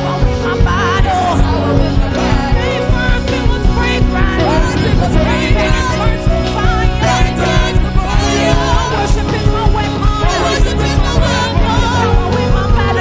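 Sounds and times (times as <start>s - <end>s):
full band with bass and drums: 0.0s - 13.0s
singers with vibrato: 0.0s - 13.0s.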